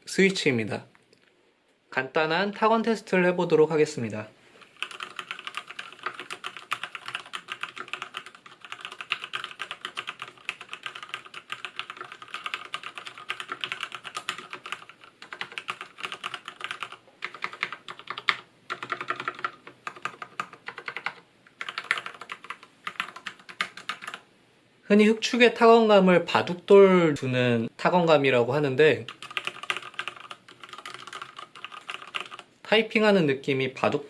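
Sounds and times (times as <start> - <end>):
mechanical keyboard typing: 4.8 - 24.2, 29.0 - 32.5.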